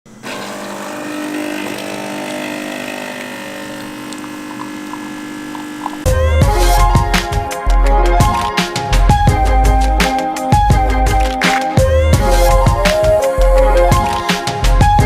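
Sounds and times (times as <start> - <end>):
droning hum of held tones: 1.3 - 6.1.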